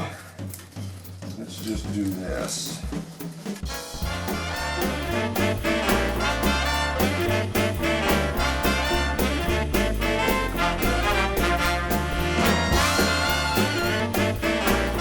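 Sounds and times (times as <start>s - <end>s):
swing music with brass: 3.0s - 15.0s.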